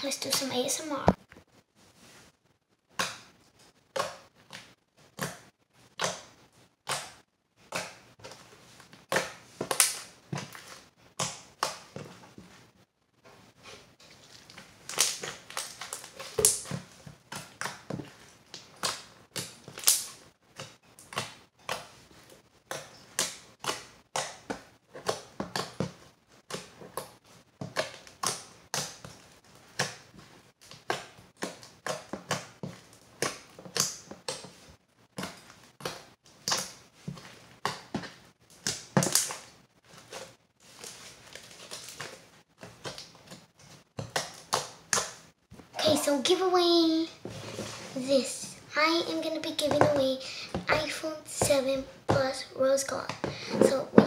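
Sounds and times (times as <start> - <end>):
slime squished by hand: 35.1 - 46.1.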